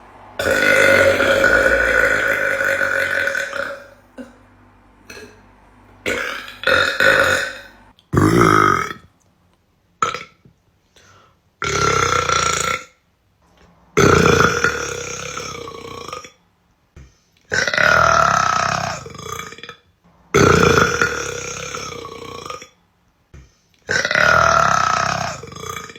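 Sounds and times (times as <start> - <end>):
woman burping: 0.4 - 4.4, 5.1 - 5.4, 6.1 - 9.1.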